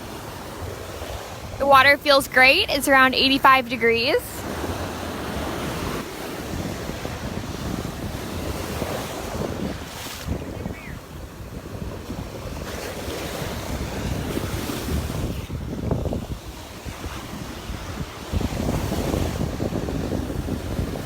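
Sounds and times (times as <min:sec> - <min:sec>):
surf washing on beach: 0:00.0 - 0:21.0
wind buffeting microphone: 0:04.4 - 0:21.0.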